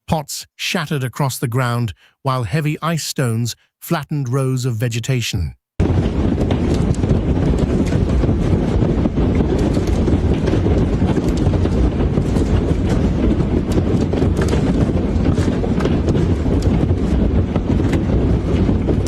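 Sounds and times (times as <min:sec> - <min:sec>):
wind buffeting microphone: 0:05.8 - 0:19.0.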